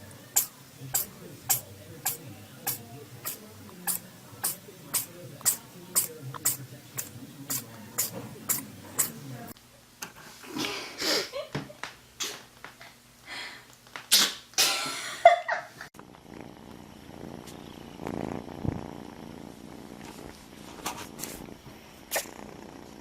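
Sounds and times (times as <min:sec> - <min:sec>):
cat purring: 0:00.0 - 0:09.6, 0:16.0 - 0:23.0
cat sneezing: 0:00.4 - 0:09.2, 0:14.1 - 0:14.8, 0:22.1 - 0:22.3.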